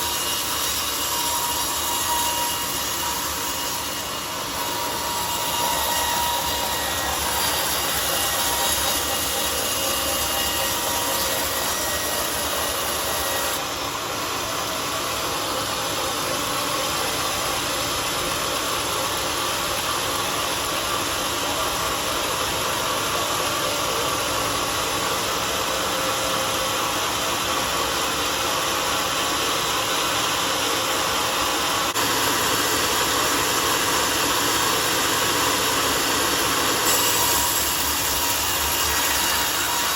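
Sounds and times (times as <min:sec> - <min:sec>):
sawmill cutting wood: 0:00.0 - 0:39.9.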